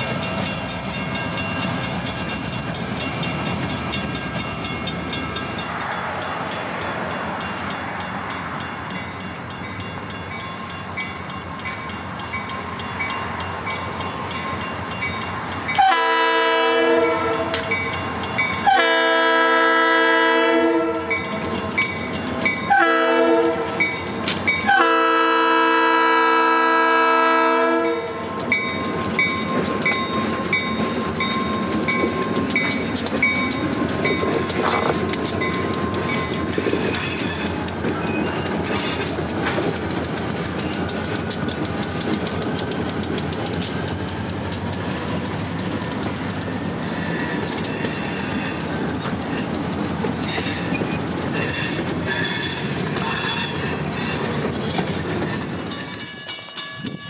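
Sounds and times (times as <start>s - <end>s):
crossing bell dinging: 0.0s - 57.0s
train rumbling: 0.0s - 57.0s
locomotive horn blasts: 15.8s - 17.8s, 18.6s - 21.2s, 22.7s - 23.9s, 24.6s - 28.2s.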